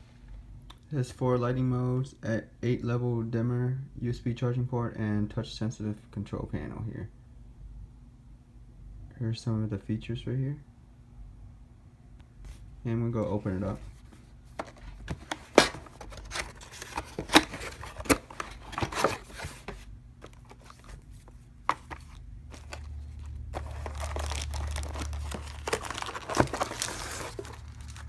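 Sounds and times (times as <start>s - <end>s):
packaging tearing and crinkling: 15.2s - 21.0s, 21.7s - 28.0s.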